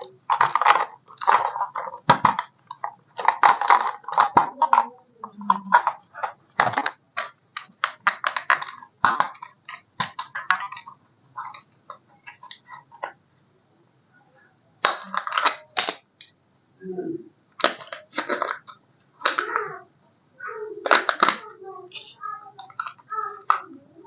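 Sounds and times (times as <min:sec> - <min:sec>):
objects clattering together: 0:00.0 - 0:13.2, 0:17.6 - 0:19.7, 0:20.8 - 0:23.8.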